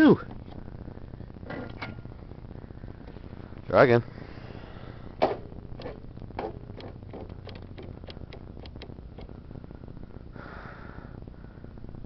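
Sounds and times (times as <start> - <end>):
starter solenoid clicking: 5.2 - 9.3.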